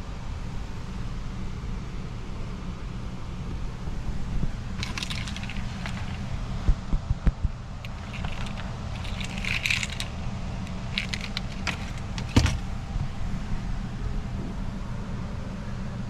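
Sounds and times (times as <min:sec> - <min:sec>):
metallic jingling and clicks: 0:04.8 - 0:06.4, 0:07.8 - 0:12.8.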